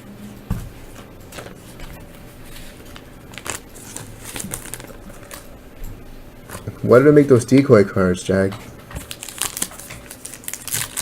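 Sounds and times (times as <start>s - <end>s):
cards and foil wrappers crinkling: 2.5s - 5.6s, 9.0s - 11.0s.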